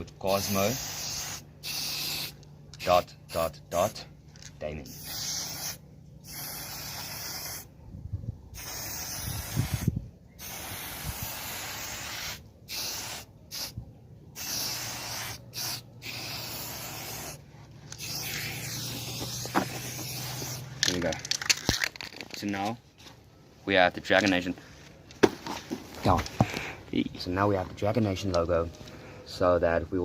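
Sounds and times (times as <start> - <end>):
spray paint can hissing: 0.3 - 3.5, 4.9 - 7.7, 8.6 - 22.1.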